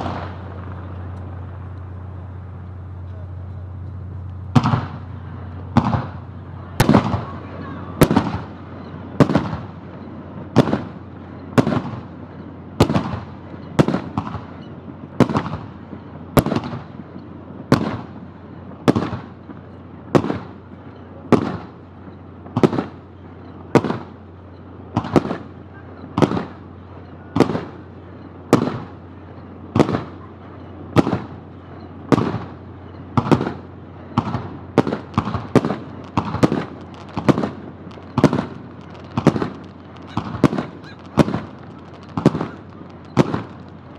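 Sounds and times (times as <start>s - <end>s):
fireworks shells bursting: 26.2s - 43.9s.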